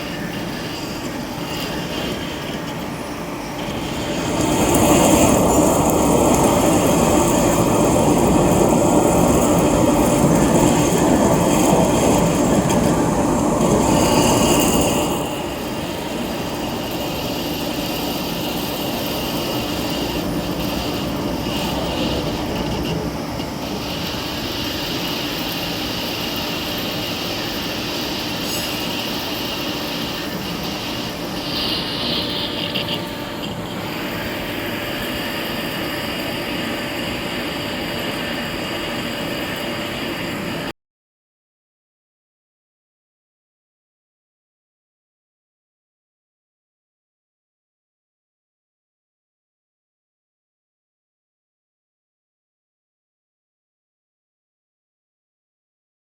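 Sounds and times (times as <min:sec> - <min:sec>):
high-pitched screech: 0:00.0 - 0:35.8
lathe machining noise: 0:00.0 - 0:40.7.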